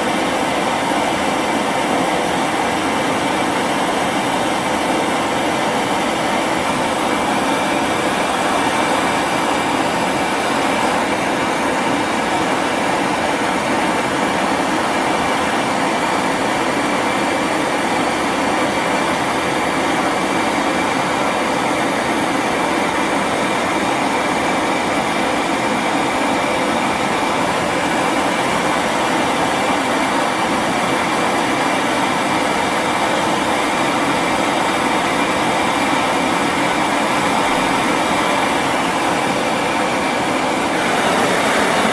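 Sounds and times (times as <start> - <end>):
brazing torch roaring: 0.0 - 19.0, 32.6 - 41.9.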